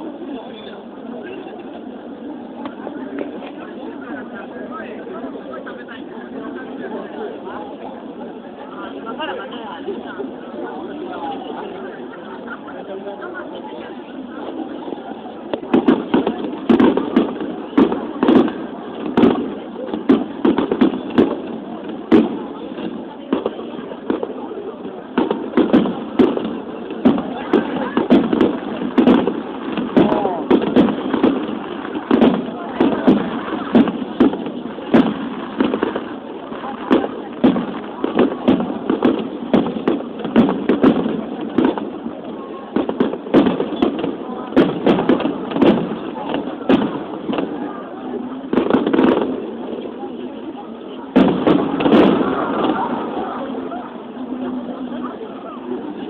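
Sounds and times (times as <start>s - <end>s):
fireworks bangs: 11.2s - 56.0s.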